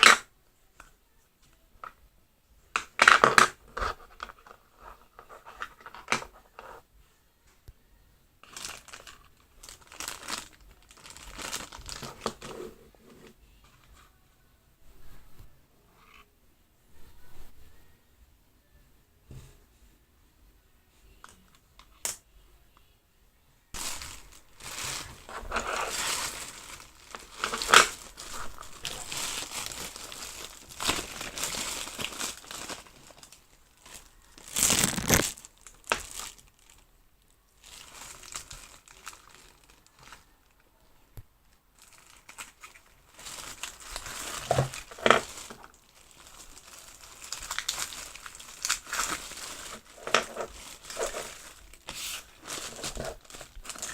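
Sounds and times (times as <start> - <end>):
plastic packaging crinkling: 0.0 - 0.3, 2.8 - 6.8, 8.4 - 12.8, 23.8 - 36.9, 37.6 - 40.4, 41.7 - 53.9.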